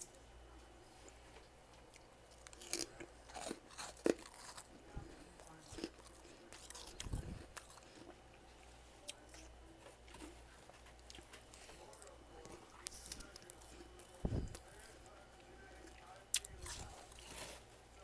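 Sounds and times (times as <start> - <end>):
frost being chewed: 1.0 - 18.0.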